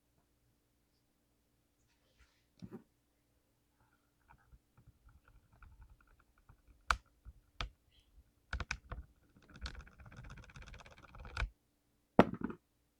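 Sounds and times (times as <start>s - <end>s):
mechanical keyboard typing: 4.3s - 7.8s, 8.5s - 11.5s.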